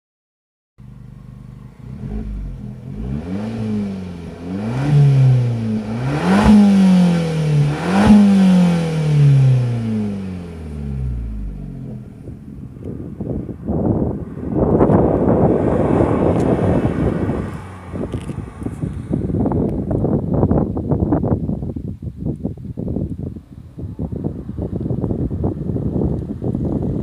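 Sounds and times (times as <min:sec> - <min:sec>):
car engine revving: 0:00.8 - 0:19.6
exhaust crack: 0:00.8 - 0:20.1.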